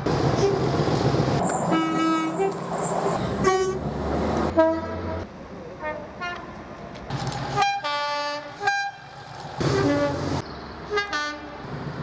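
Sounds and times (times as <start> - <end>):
rumble of passing train: 0.0 - 7.7
multi-tone train horn blasts: 1.7 - 2.5, 3.4 - 3.8, 4.5 - 5.2, 7.6 - 9.1, 10.9 - 11.6.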